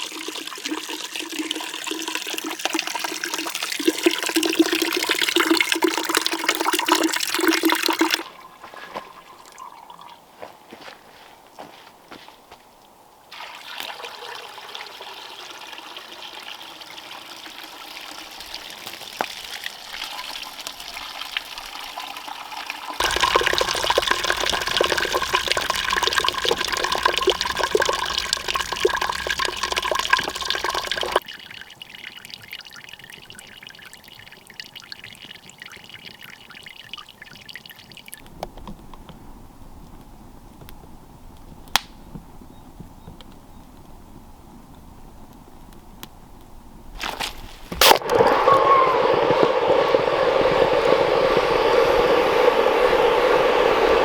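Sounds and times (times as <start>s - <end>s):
water pouring and trickling: 0.0s - 10.6s, 13.3s - 38.3s.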